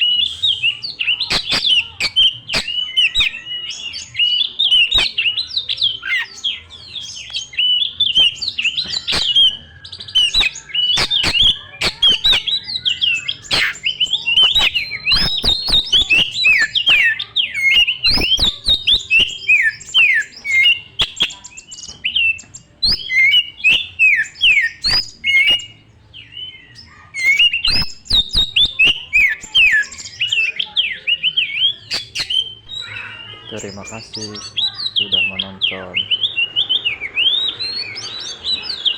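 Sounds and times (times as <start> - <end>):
bird singing whistles and chirps: 0.0 - 38.9
sharp clicks: 1.3 - 3.3, 8.8 - 9.6, 10.3 - 12.6.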